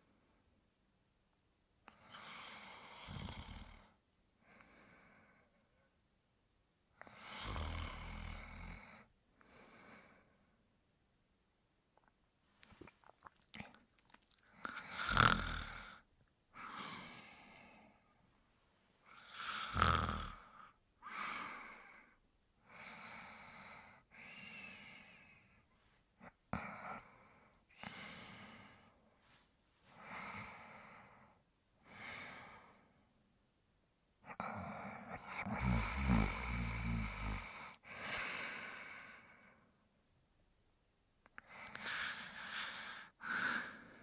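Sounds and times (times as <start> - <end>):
person snoring: 2.1 - 3.9, 7.0 - 9.0, 14.5 - 16.0, 19.1 - 21.8, 34.3 - 38.8, 41.6 - 44.0
soft breathing: 22.9 - 33.1.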